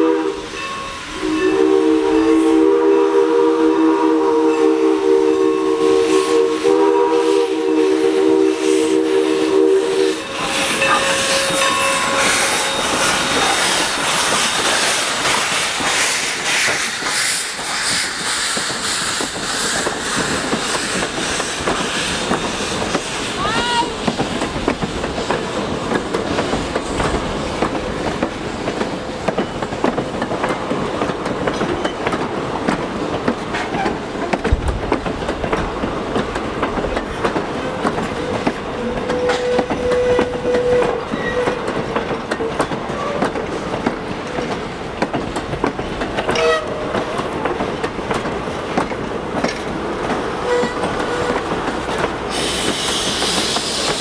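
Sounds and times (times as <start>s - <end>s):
loud hiss: 4.6s - 24.4s, 52.2s - 54.0s
train wheels clicking over rail joints: 6.0s - 54.0s
train wheels squealing: 10.0s - 21.0s, 38.2s - 41.7s, 50.4s - 51.6s, 52.3s - 54.0s.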